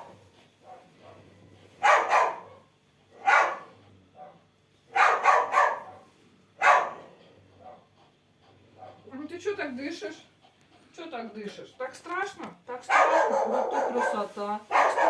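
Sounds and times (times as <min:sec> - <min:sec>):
dog barking: 0:00.0 - 0:07.9, 0:12.8 - 0:15.0.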